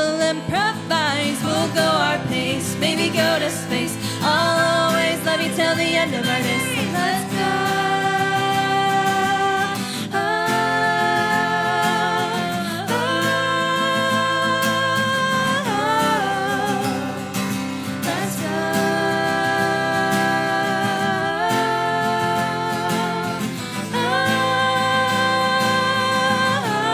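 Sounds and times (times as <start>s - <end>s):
acoustic guitar: 0.0s - 26.9s.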